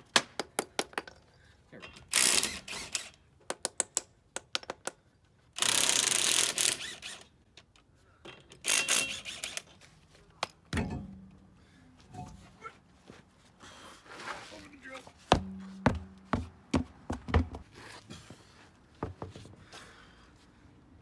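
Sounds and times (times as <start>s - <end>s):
dull thump: 15.3s - 17.6s.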